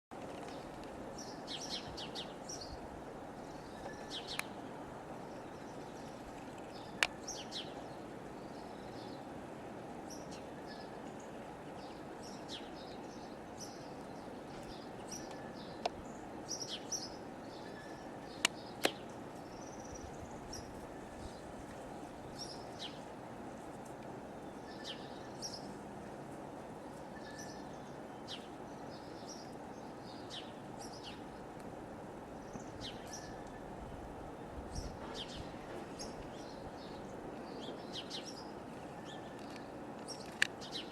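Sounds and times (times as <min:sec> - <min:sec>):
low background noise: 0:00.1 - 0:40.9
small birds chirping: 0:10.1 - 0:23.2, 0:34.3 - 0:40.9.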